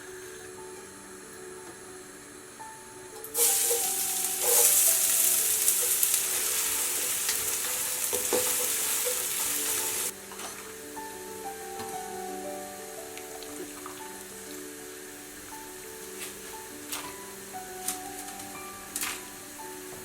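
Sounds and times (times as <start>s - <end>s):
food sizzling in hot oil: 3.3s - 20.0s.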